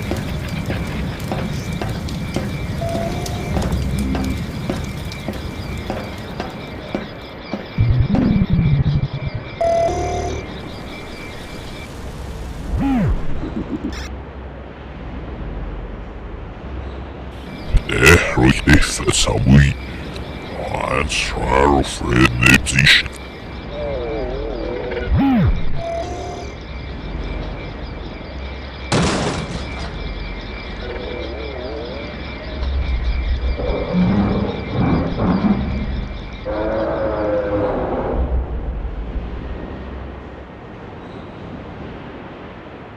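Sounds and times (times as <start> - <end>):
steady low rumble: 12.5 - 14.2.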